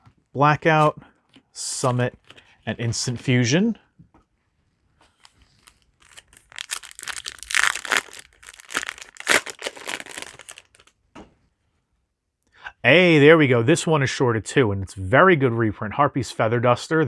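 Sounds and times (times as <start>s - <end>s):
cards being handled: 5.0s - 10.9s
foil wrapper crinkling and tearing: 5.2s - 10.9s.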